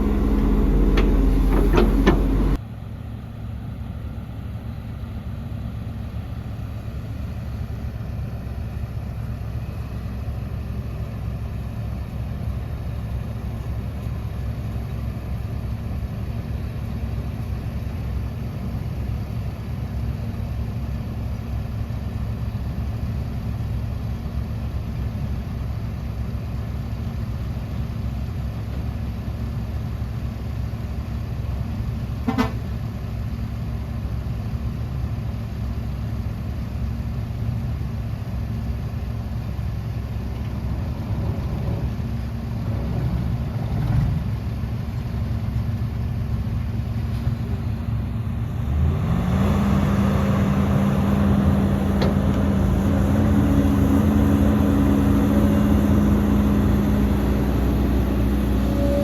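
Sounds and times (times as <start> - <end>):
heavy diesel engine droning: 0.0 - 2.6, 31.9 - 33.0, 35.2 - 59.0.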